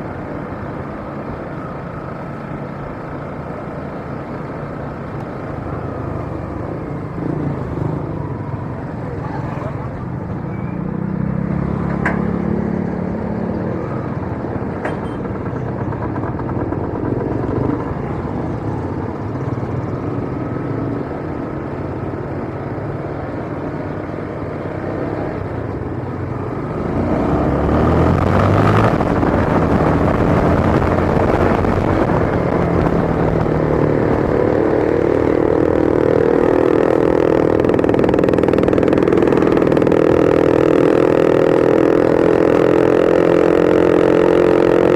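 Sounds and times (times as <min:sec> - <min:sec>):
motorcycle engine running: 0:11.2 - 0:21.3, 0:25.5 - 0:44.9.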